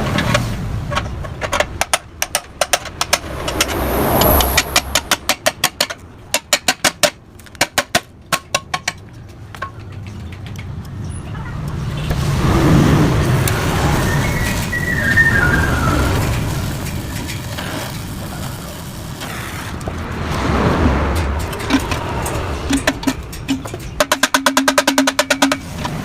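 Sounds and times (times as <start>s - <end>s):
background rumble: 0.0s - 6.3s, 11.8s - 24.3s.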